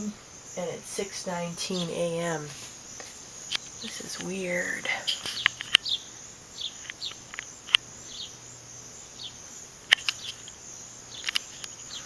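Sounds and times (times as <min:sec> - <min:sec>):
insect trill: 0:00.0 - 0:12.0
small birds chirping: 0:00.0 - 0:12.0
sharp clicks: 0:03.4 - 0:06.0, 0:06.6 - 0:07.9, 0:09.2 - 0:12.0.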